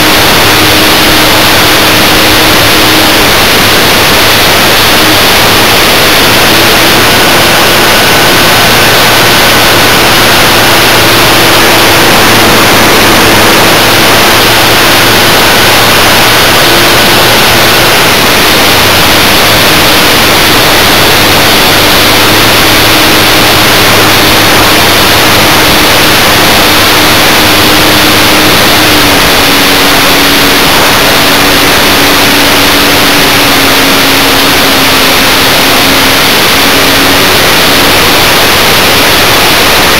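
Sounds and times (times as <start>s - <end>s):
model plane motor humming: 0.0s - 39.9s
rushing wind noise: 0.0s - 39.9s.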